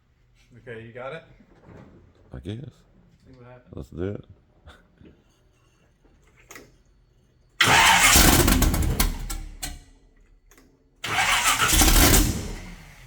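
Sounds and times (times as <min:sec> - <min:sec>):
car engine starting and running: 0:07.6 - 0:09.8, 0:11.0 - 0:13.0.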